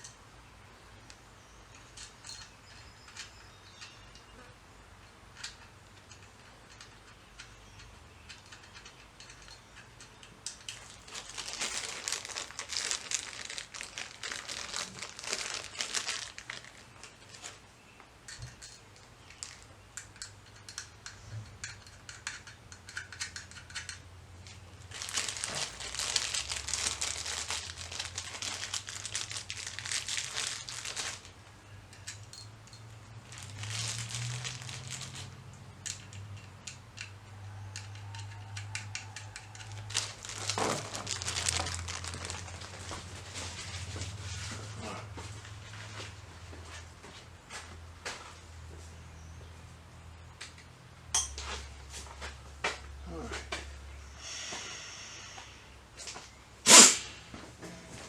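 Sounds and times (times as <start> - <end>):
crinkling and rustling: 8.3 - 48.9.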